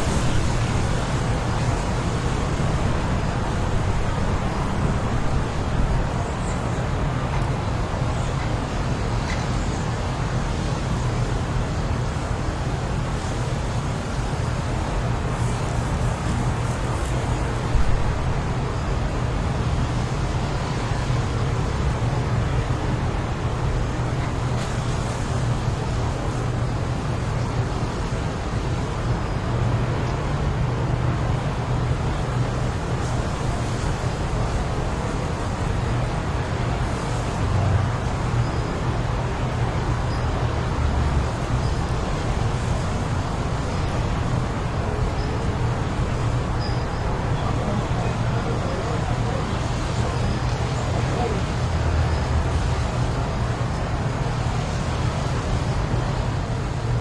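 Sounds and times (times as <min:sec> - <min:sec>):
strong wind rumbling: 0:00.0 - 0:09.2.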